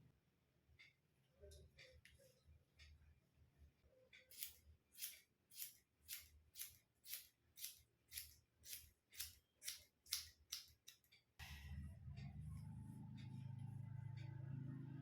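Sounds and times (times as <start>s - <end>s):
scissors snipping hair: 4.3s - 11.1s
low steady hum: 11.4s - 15.0s.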